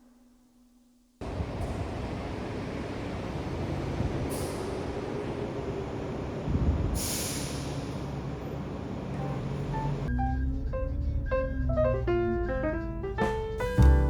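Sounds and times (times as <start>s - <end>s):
train rumbling: 1.2s - 14.0s
air hiss: 7.0s - 8.0s.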